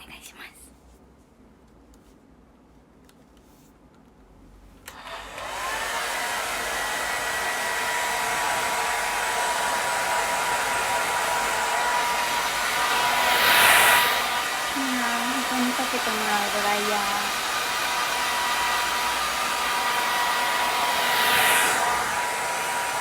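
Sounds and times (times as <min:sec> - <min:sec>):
hair dryer blowing: 0:04.8 - 0:23.0.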